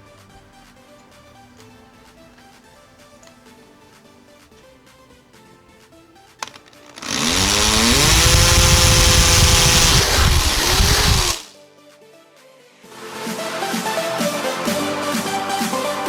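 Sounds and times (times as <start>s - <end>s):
power drill drilling: 6.4s - 11.5s.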